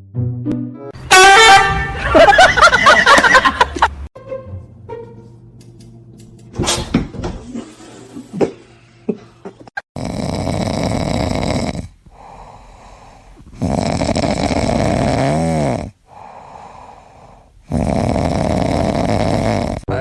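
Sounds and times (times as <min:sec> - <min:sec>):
loud snoring: 0:09.9 - 0:20.0
quiet breaths: 0:11.8 - 0:13.7, 0:15.9 - 0:17.8.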